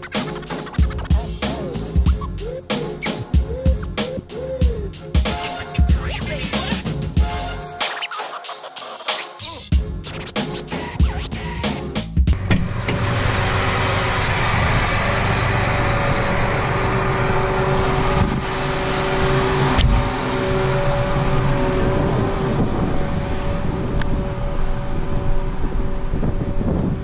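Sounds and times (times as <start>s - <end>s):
farm machinery engine running: 12.4s - 27.0s.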